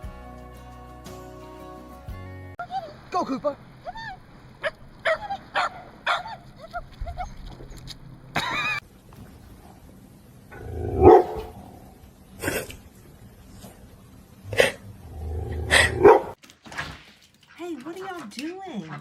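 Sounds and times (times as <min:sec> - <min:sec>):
dog barking: 0:04.6 - 0:06.4, 0:10.8 - 0:11.6, 0:15.7 - 0:16.4
dog drawn-out cry: 0:04.6 - 0:07.4, 0:10.6 - 0:11.7, 0:15.7 - 0:16.4.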